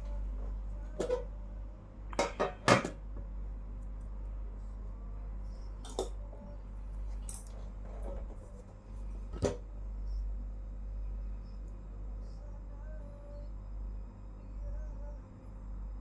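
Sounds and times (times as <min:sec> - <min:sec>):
steady low hum: 0:00.0 - 0:16.0
handling small parts and tools: 0:07.1 - 0:07.6.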